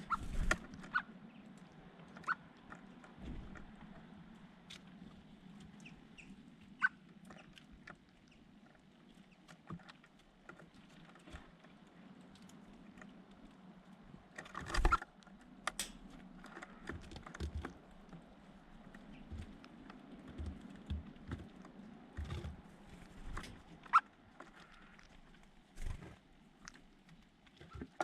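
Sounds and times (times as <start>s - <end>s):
small birds tapping and clicking: 0.0s - 28.0s
bird chirp: 5.7s - 7.0s.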